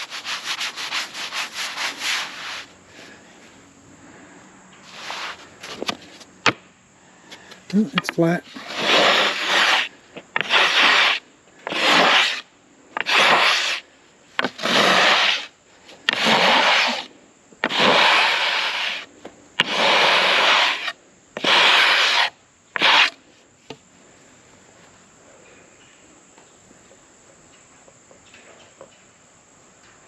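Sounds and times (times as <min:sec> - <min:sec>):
scraping strokes across wood: 0:00.0 - 0:03.6, 0:04.8 - 0:06.6, 0:07.3 - 0:13.8, 0:14.4 - 0:23.8.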